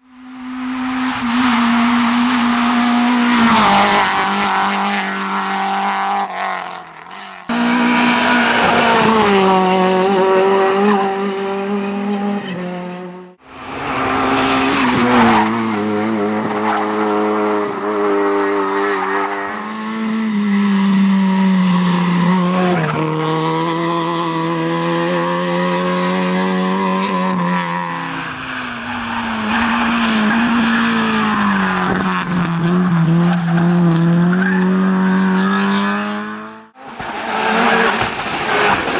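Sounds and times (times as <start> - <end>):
rally car engine revving: 0.0 - 38.9.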